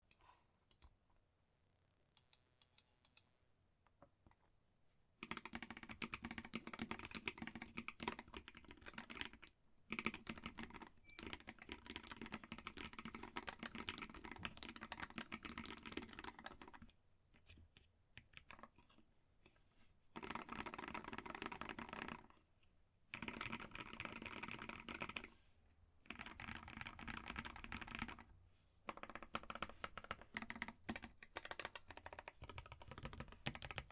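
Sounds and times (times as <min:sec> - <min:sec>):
mechanical keyboard typing: 0:05.2 - 0:16.9, 0:18.2 - 0:18.8, 0:20.2 - 0:22.3, 0:23.1 - 0:25.3, 0:26.1 - 0:28.3, 0:28.9 - 0:33.9.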